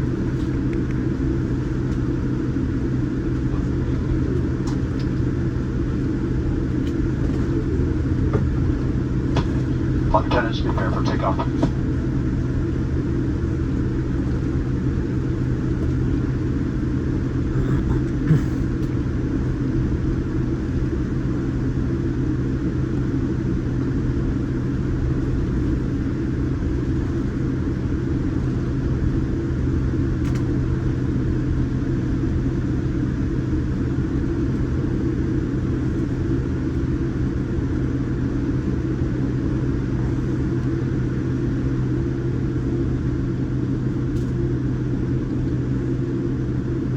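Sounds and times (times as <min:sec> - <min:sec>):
jet engine rumble in cabin: 0:00.0 - 0:46.9.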